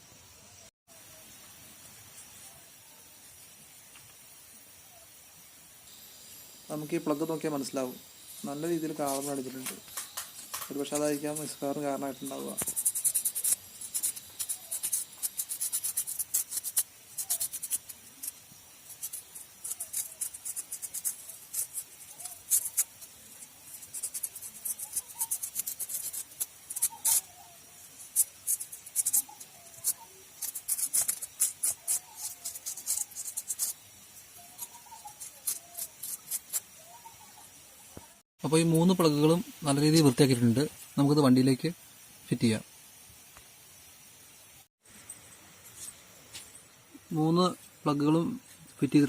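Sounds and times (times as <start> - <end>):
scrubbing spark plug: 8.2 - 36.8.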